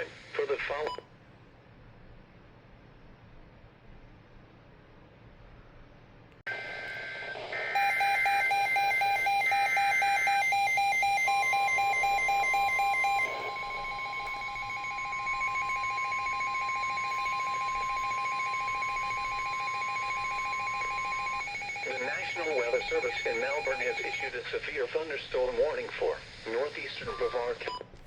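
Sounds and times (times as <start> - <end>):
steady warning alarm tone: 6.5 - 24.5
warbling data bursts: 7.6 - 24.4
rapid pulsed alarm beeping: 7.7 - 24.4.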